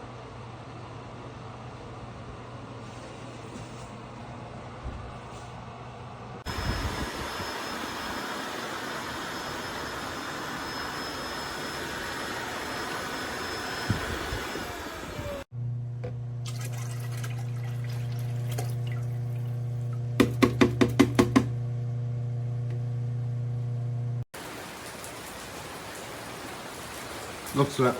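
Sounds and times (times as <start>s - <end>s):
vacuum cleaner rushing and whining: 6.5s - 15.5s.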